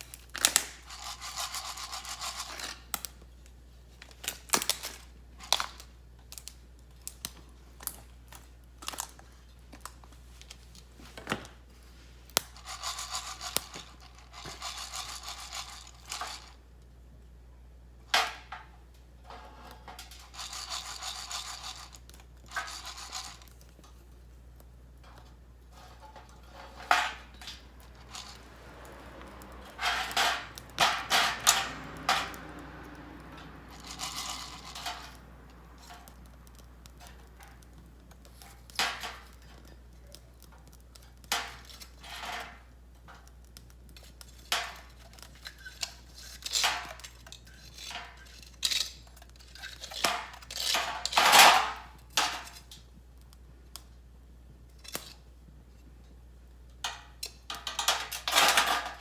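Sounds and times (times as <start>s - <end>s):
coffee beans rattling in roaster: 0.0s - 2.9s, 12.4s - 16.6s, 20.0s - 24.0s, 25.0s - 52.2s.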